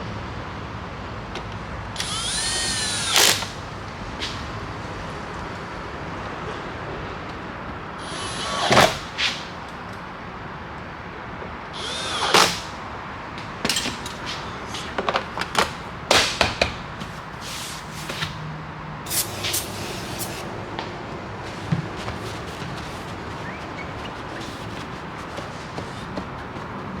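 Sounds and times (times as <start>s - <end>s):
power drill whining: 2.0s - 3.6s, 8.0s - 9.2s, 11.8s - 12.8s
clicks and knocks of parts: 13.6s - 18.3s.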